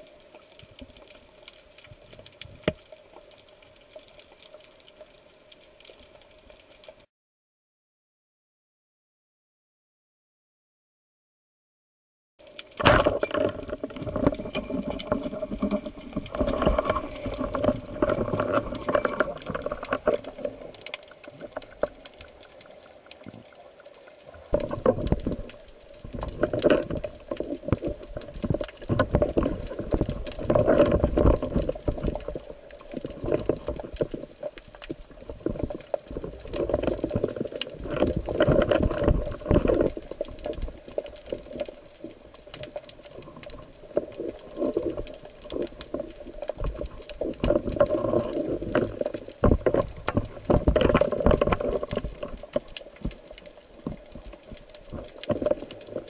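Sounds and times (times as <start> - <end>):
water rushing and gurgling: 12.5 - 56.0.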